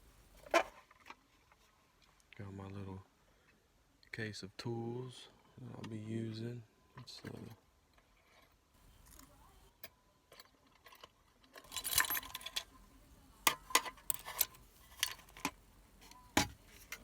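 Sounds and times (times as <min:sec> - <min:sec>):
metal tools clinking and rattling: 0:10.3 - 0:12.7, 0:13.5 - 0:15.6.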